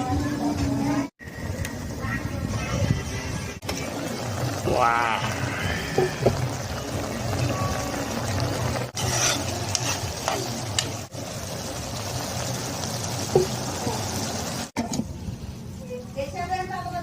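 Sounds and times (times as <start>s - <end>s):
stirring in a pan: 3.6s - 14.7s
noodles sizzling in a pan: 3.7s - 14.8s.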